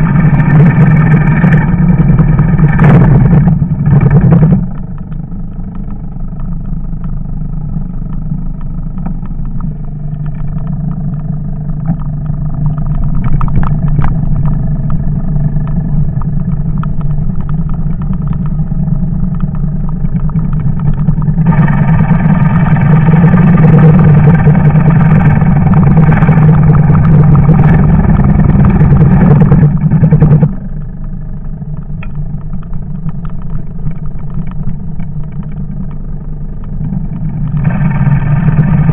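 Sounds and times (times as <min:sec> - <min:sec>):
farm machine engine running: 0:08.4 - 0:38.9.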